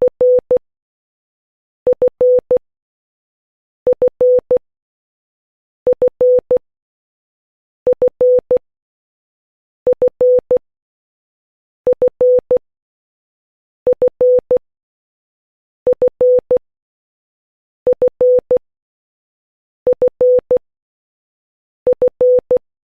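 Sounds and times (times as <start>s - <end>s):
morse code beeps: 0.1s - 0.5s, 1.9s - 2.6s, 3.9s - 4.6s, 5.9s - 6.6s, 7.9s - 8.6s, 9.9s - 10.6s, 11.9s - 12.6s, 13.9s - 14.6s, 15.9s - 16.6s, 17.9s - 18.6s, 19.9s - 20.6s, 21.9s - 22.6s.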